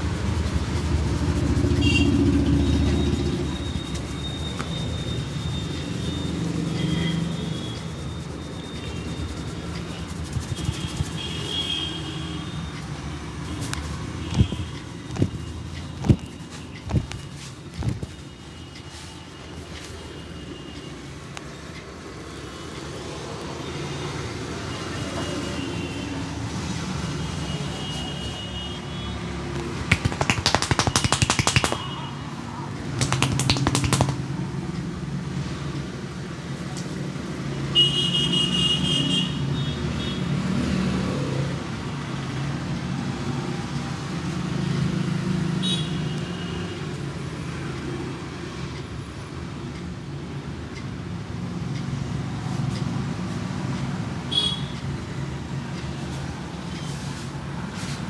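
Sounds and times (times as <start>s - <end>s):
fast sharp taps: 0.0s - 12.0s, 13.5s - 18.2s, 29.6s - 32.1s, 32.8s - 34.3s
street traffic: 0.0s - 58.0s.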